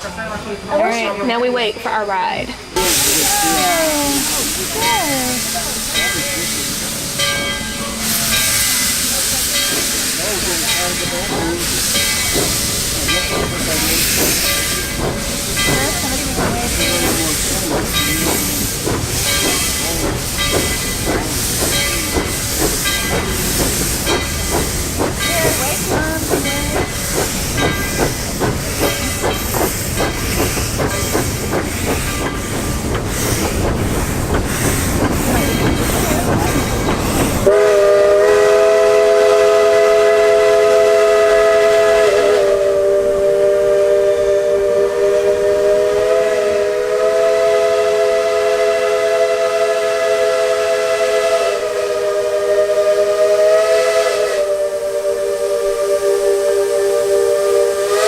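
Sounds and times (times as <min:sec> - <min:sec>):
steam locomotive hissing: 0:00.0 - 0:58.0.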